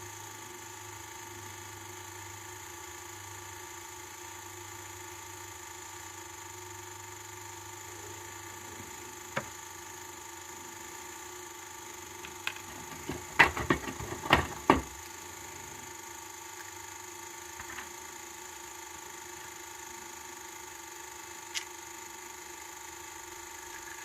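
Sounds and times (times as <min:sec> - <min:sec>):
faint steady hum: 0:00.0 - 0:24.0
clicks and rattles of small parts: 0:12.2 - 0:15.1.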